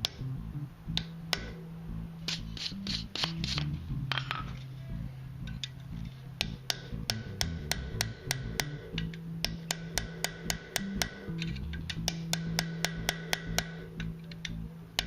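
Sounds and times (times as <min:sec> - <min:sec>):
background music: 0:00.0 - 0:15.0
hammer striking steel punch: 0:09.4 - 0:11.3, 0:12.0 - 0:13.8.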